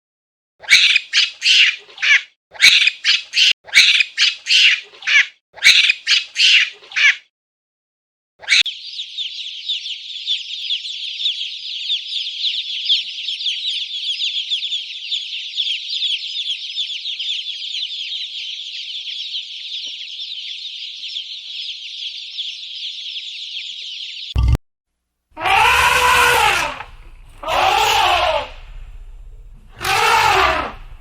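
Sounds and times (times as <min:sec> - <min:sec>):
chicks peeping: 0:08.6 - 0:24.4.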